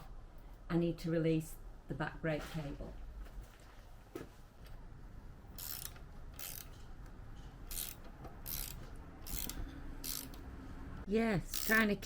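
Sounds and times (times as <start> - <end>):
ratchet spanner clicking: 5.6 - 6.8, 7.7 - 10.5, 11.5 - 11.9.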